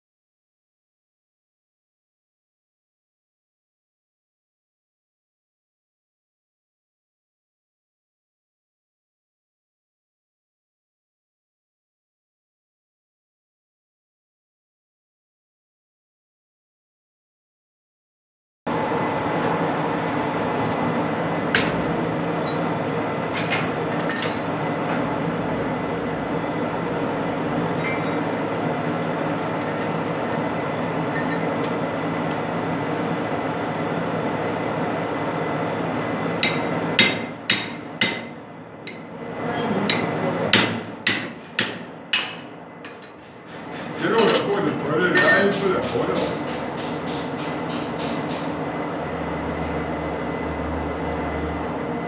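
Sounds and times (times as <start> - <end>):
workshop machine humming: 18.7 - 52.0.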